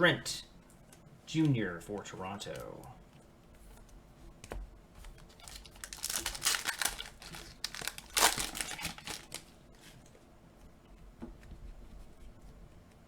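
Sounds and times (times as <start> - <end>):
card pack wrapper crinkling: 5.2 - 9.6.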